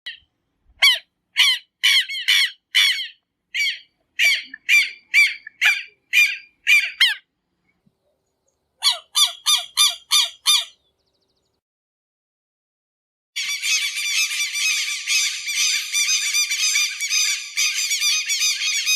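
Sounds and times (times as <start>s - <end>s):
lapwing alarm calls: 0.8s - 7.2s, 8.8s - 10.8s, 13.4s - 18.9s.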